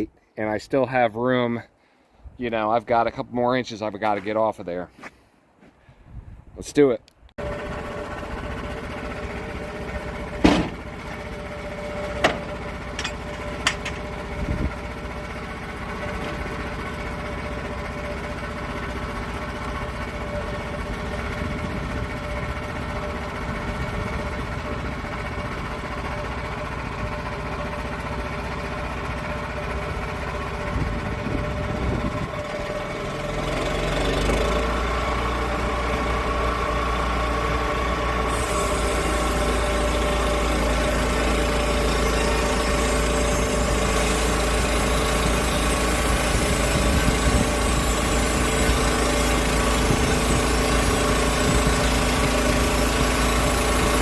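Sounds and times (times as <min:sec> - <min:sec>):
sawmill engine running: 0:07.4 - 0:54.0
sharp knocks: 0:10.4 - 0:10.8.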